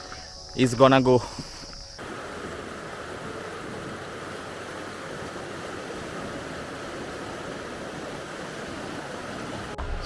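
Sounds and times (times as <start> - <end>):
steady rushing noise: 2.0 - 9.8.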